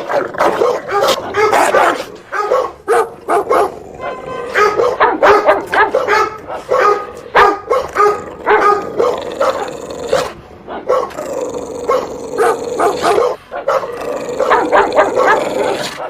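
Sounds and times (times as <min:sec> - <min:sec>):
dog barking: 0:00.0 - 0:11.2, 0:11.9 - 0:16.0.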